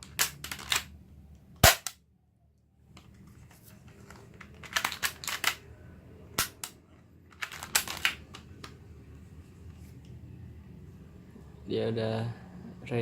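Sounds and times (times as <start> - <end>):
sharp plastic snap: 1.6 - 2.0, 6.4 - 6.8.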